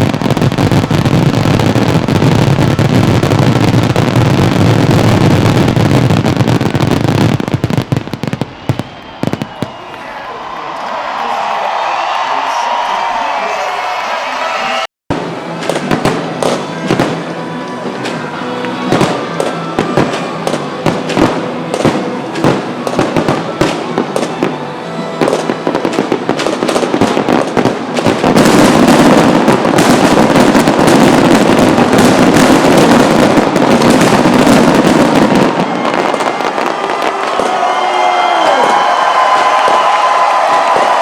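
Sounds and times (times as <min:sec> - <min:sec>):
fireworks bangs and crackles: 0:00.0 - 0:10.2, 0:15.1 - 0:41.0
music playing: 0:12.3 - 0:26.8.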